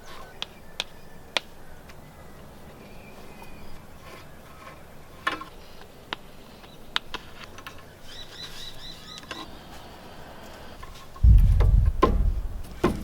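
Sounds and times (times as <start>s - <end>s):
bird chirping: 0.0s - 7.0s, 7.7s - 9.6s
sharp clicks and knocks: 11.2s - 13.0s.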